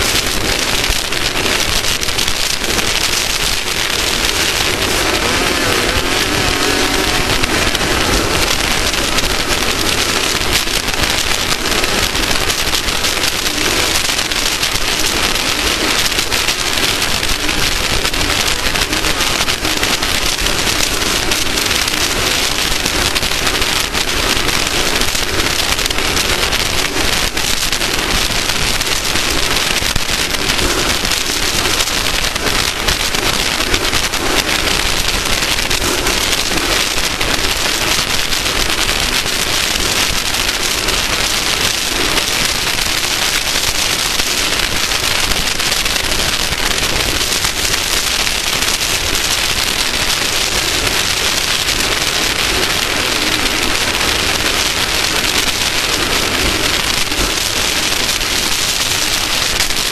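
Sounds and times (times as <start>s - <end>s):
off-road vehicle driving at speed: 0.0s - 40.3s
constant crackling: 0.0s - 59.9s.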